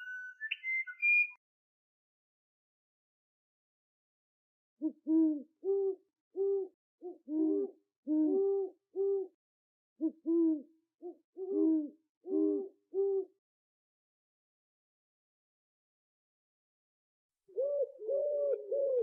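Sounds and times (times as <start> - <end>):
owl hooting: 4.8 - 9.3, 10.0 - 13.3, 17.6 - 19.0.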